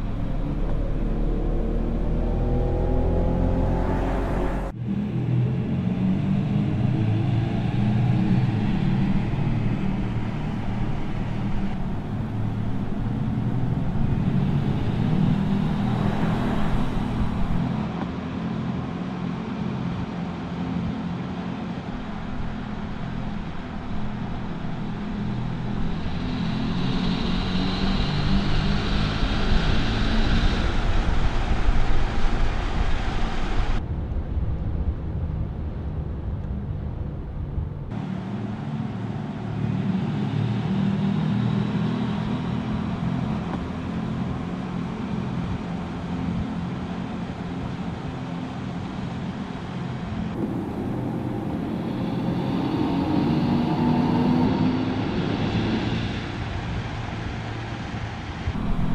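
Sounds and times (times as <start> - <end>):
electric car humming: 0.0 - 18.0, 50.1 - 54.8, 56.5 - 58.9
road noise: 0.0 - 58.9.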